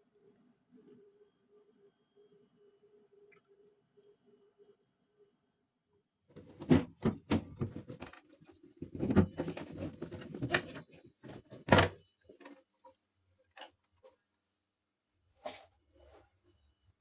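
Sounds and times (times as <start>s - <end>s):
objects being handled: 6.4s - 14.5s.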